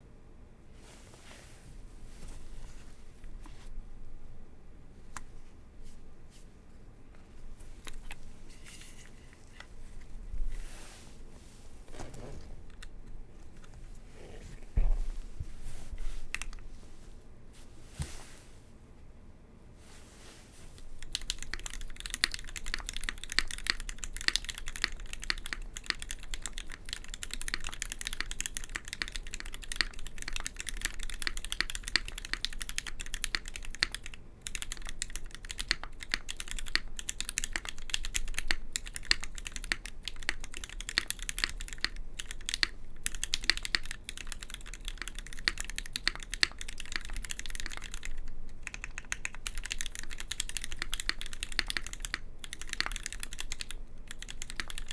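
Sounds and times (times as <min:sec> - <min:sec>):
mechanical keyboard typing: 0:20.9 - 0:54.9.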